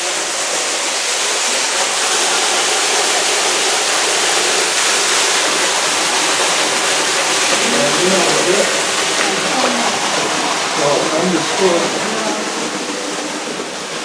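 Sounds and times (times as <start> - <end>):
rushing flood water: 0.0 - 14.0.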